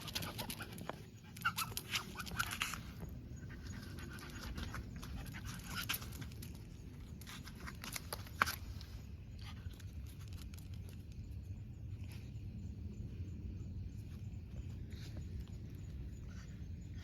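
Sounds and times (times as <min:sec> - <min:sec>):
dog panting and snuffling: 0:00.0 - 0:08.7.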